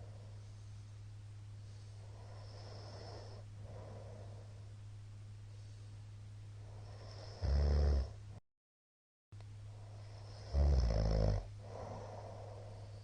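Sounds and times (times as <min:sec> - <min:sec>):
soft breath: 0:00.0 - 0:04.8, 0:05.4 - 0:07.4, 0:11.5 - 0:13.0
man snoring: 0:02.1 - 0:04.0, 0:06.8 - 0:08.2, 0:10.1 - 0:12.8.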